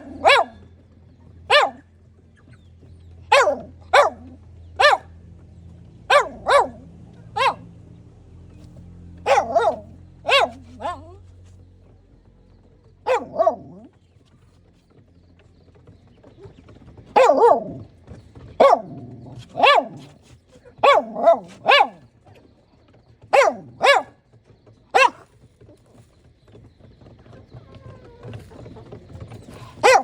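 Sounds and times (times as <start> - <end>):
dog barking: 0.0 - 0.6, 1.5 - 1.9, 3.3 - 5.2, 6.1 - 7.7, 9.2 - 11.2, 13.0 - 13.9, 17.2 - 17.8, 18.6 - 20.1, 20.8 - 22.0, 23.3 - 24.2, 24.9 - 25.3, 29.7 - 30.0.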